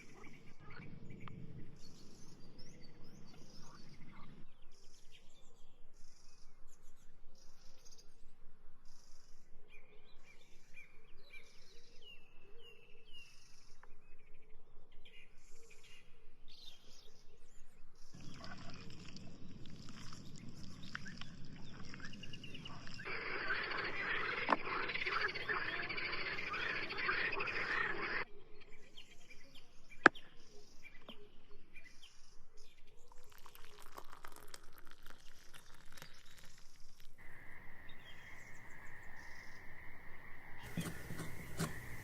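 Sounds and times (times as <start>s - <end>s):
frogs croaking: 18.2s - 28.2s, 37.2s - 42.0s
dense hiss: 37.2s - 42.0s.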